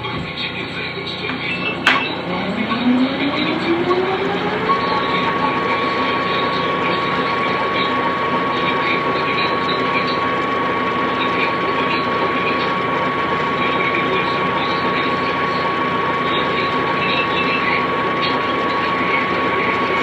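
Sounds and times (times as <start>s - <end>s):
mechanical whir: 0.0s - 20.0s
tape machine motor whine: 0.0s - 20.0s.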